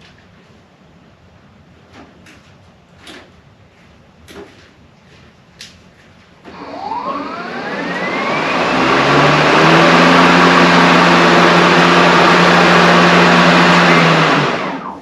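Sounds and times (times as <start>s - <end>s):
cordless lawn mower whirring: 6.5s - 15.0s.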